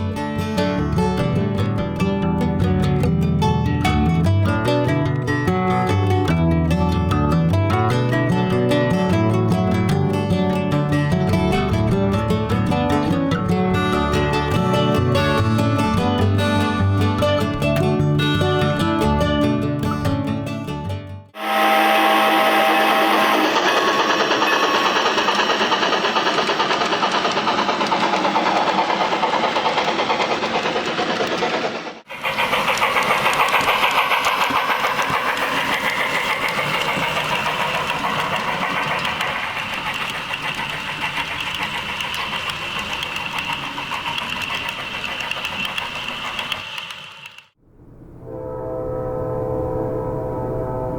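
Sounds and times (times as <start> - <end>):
steam locomotive exhaust chuffs: 21.4 - 47.6.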